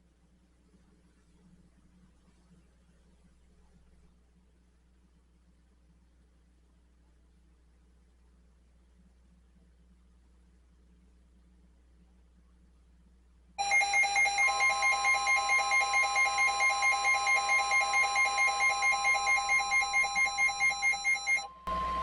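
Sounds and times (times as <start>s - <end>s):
faint low hum and hiss: 0.0s - 22.0s
rapid electronic alarm beeps: 13.6s - 22.0s
steady high alarm tone: 13.6s - 22.0s.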